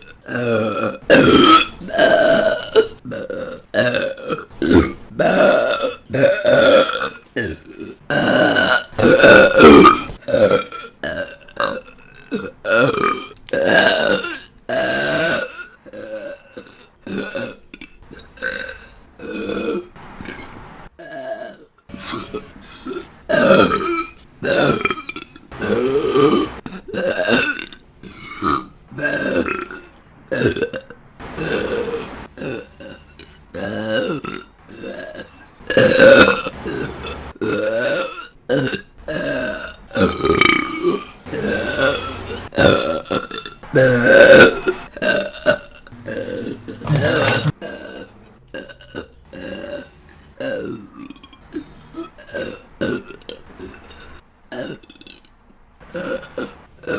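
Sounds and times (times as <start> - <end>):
woman burping: 0.0 - 20.4, 21.0 - 56.9.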